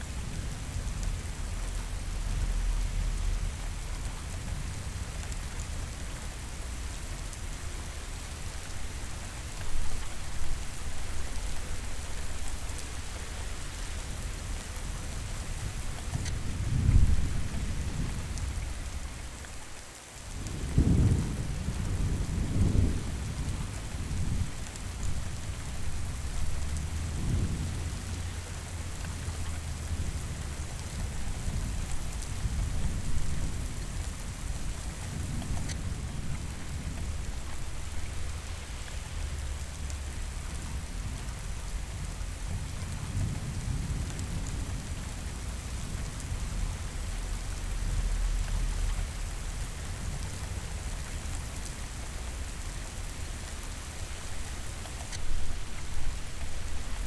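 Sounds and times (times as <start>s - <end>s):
heavy rain: 0.0s - 57.0s
rolling thunder: 16.4s - 19.2s, 20.4s - 38.5s.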